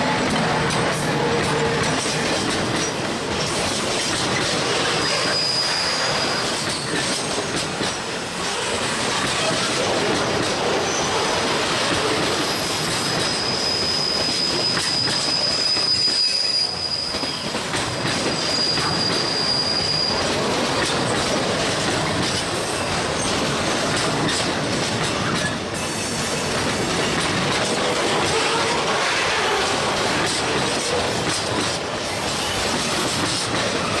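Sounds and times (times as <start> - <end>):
train wheels knocking over rail joints: 0.0 - 34.0
high wheel squeal: 4.3 - 7.6, 10.6 - 20.9.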